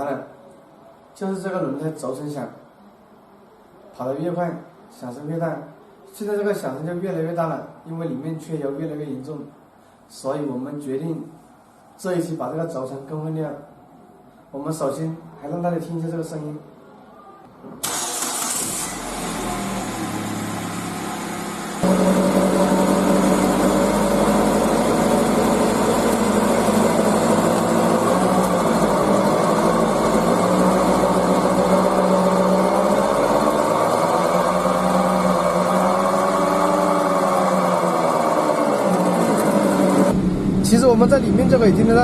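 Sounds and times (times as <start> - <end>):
wheel bearing droning hum: 19.0 - 42.0.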